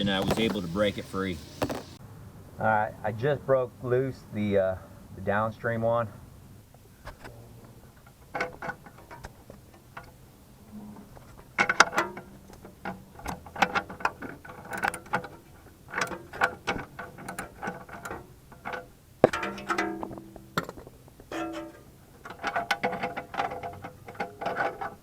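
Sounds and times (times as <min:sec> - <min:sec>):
hand tools clinking on metal: 0:06.7 - 0:25.0.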